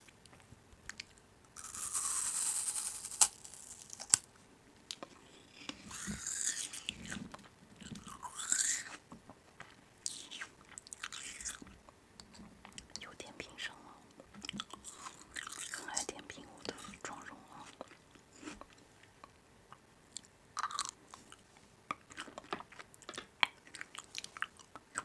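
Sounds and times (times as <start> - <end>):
crisp food crunching: 0.9 - 4.2, 4.9 - 9.0, 9.6 - 11.8, 20.6 - 25.0.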